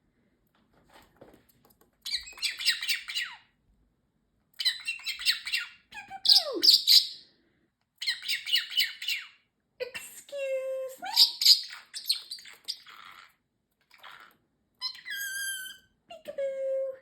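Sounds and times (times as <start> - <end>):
parrotlet squawking and chirping: 2.0 - 3.5, 4.6 - 7.2, 8.0 - 9.4, 11.1 - 16.0.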